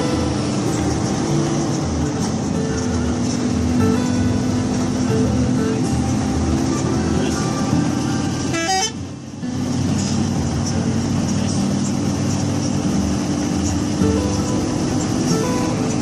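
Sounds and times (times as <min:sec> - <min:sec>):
musical bus horn chords: 0:02.8 - 0:10.2.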